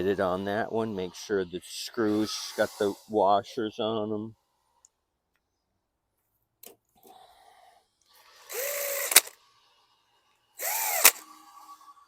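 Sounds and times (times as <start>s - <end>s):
power driver motor whine: 8.5s - 9.4s, 10.6s - 11.7s.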